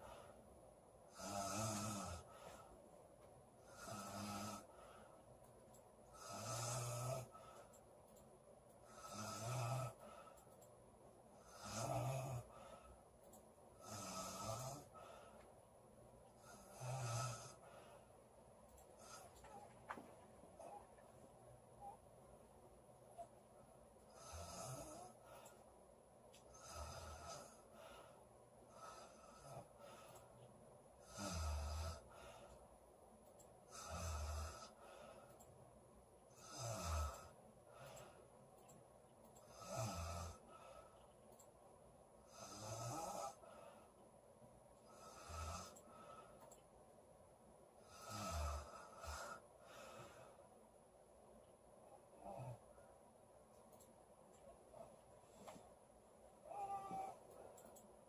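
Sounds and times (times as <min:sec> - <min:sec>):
quiet breaths: 0:00.0 - 0:58.0
woman snoring: 0:01.1 - 0:02.4, 0:03.6 - 0:04.8, 0:06.2 - 0:07.6, 0:08.9 - 0:10.1, 0:11.4 - 0:12.7, 0:13.8 - 0:15.2, 0:16.4 - 0:17.7, 0:24.1 - 0:25.3, 0:26.5 - 0:27.7, 0:31.0 - 0:32.2, 0:33.7 - 0:35.0, 0:36.4 - 0:37.9, 0:39.5 - 0:40.6, 0:42.3 - 0:43.4, 0:44.9 - 0:45.8, 0:47.8 - 0:50.3, 0:56.4 - 0:57.2.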